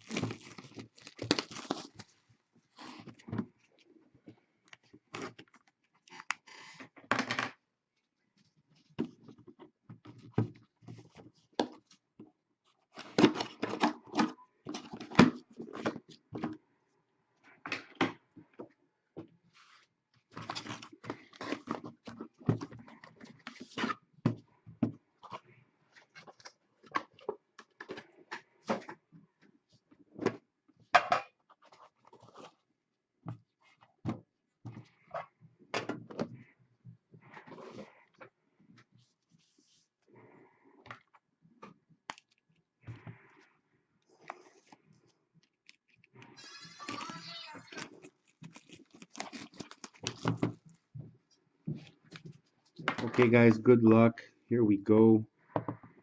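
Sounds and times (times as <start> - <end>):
packaging rustling and scraping: 0.0 - 3.8, 44.2 - 50.8.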